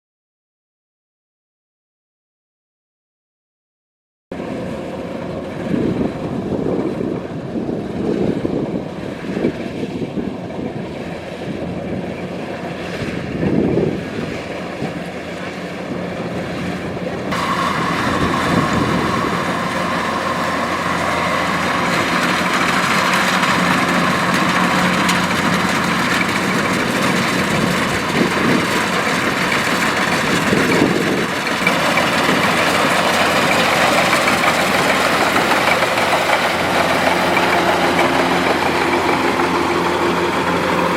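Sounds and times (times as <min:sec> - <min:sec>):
combine harvester running: 0:04.4 - 0:40.9
high rushing whir: 0:16.2 - 0:40.9.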